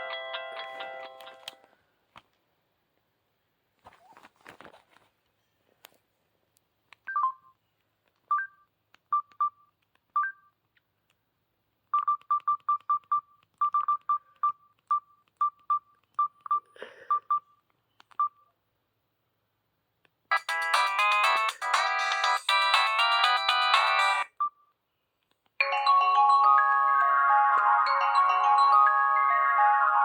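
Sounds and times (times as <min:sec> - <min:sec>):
phone key beeps: 0:07.0 - 0:07.6, 0:08.3 - 0:10.6, 0:11.9 - 0:18.5
polyphonic ringtone: 0:20.3 - 0:24.3, 0:25.6 - 0:30.0.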